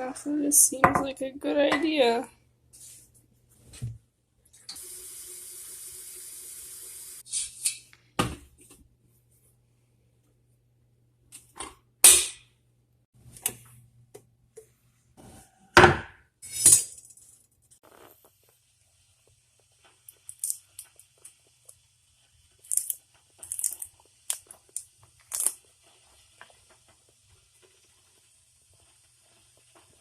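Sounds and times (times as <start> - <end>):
kitchenware knocking and clattering: 0.8 - 1.9, 15.8 - 16.9
water running from a tap: 4.7 - 7.2.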